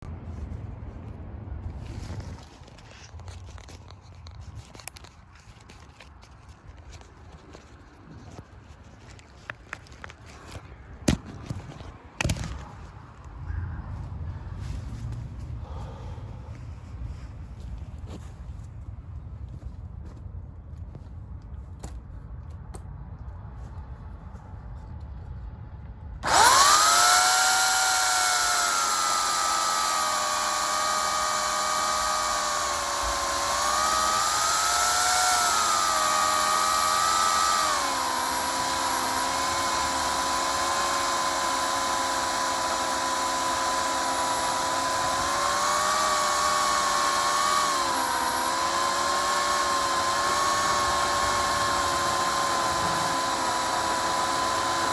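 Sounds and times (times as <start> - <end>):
electric chainsaw whining: 26.2 - 54.9.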